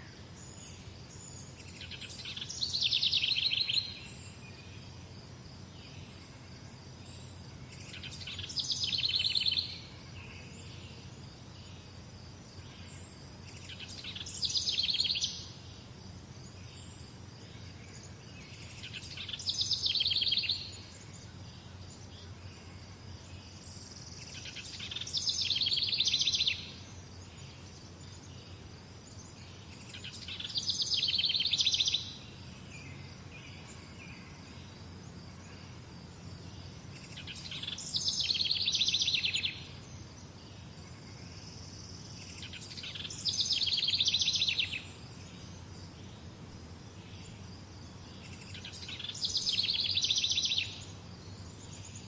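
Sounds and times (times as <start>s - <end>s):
songbird trilling: 0.0s - 4.3s, 7.8s - 10.8s, 13.6s - 15.6s, 18.5s - 21.2s, 24.3s - 26.8s, 29.9s - 32.2s, 37.1s - 39.8s, 42.2s - 45.0s, 48.2s - 51.0s.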